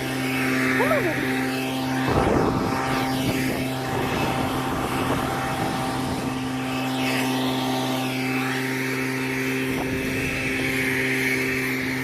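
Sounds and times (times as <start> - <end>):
motor droning: 0.0 - 12.0.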